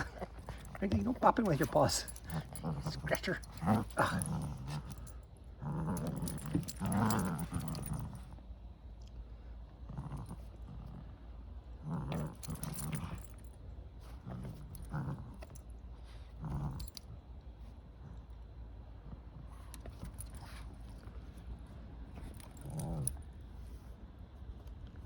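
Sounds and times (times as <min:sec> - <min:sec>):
dog growling in play: 0:00.0 - 0:08.4, 0:09.7 - 0:17.2, 0:22.1 - 0:23.7.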